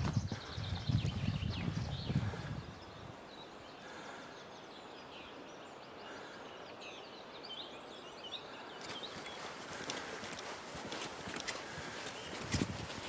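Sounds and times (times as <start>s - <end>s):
songbirds chirping: 0.0s - 13.0s
footsteps on a path: 8.8s - 13.0s.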